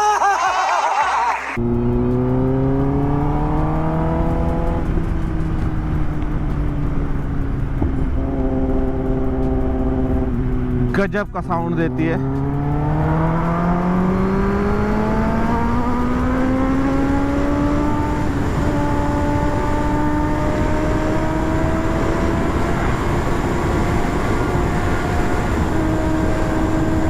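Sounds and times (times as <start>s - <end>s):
wind noise: 12.2s - 27.0s.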